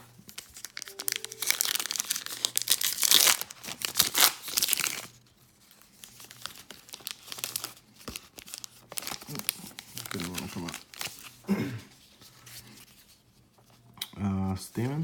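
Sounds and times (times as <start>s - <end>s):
plastic wrapper crumpled and torn: 0.2s - 11.4s.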